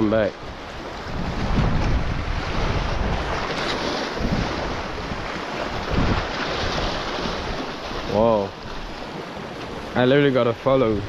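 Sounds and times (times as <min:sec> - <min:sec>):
rough sea waves: 0:00.0 - 0:11.0
wind buffeting microphone: 0:00.0 - 0:11.0.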